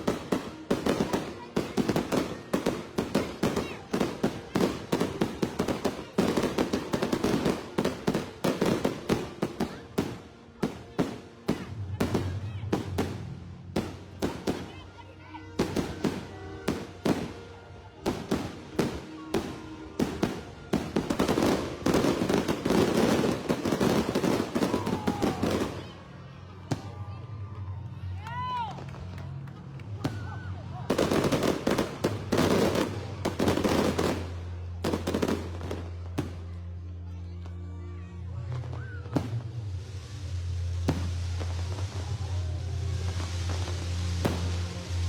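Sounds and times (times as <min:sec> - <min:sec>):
fireworks bangs: 0:00.0 - 0:26.1, 0:30.9 - 0:36.5, 0:38.6 - 0:45.0
fireworks crackling: 0:00.0 - 0:36.9, 0:38.3 - 0:45.0.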